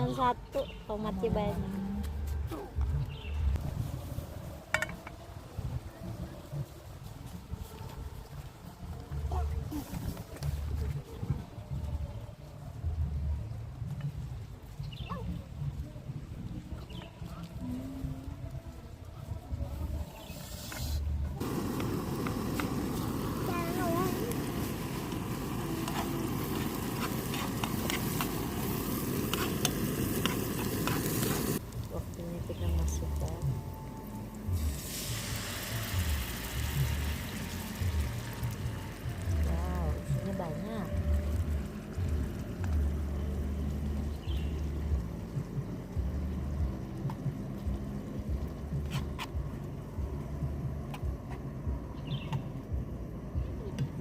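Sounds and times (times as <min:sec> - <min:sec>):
gas camping stove burning: 0:19.2 - 0:54.0
crackles from hot pan: 0:21.4 - 0:33.5, 0:34.4 - 0:46.1.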